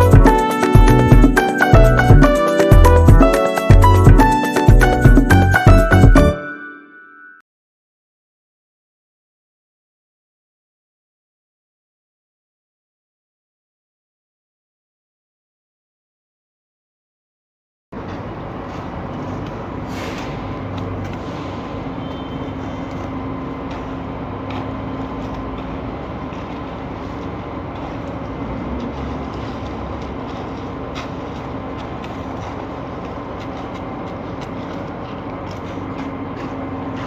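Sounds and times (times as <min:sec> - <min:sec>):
heavy diesel engine running: 0:00.0 - 0:06.0, 0:18.0 - 0:37.0.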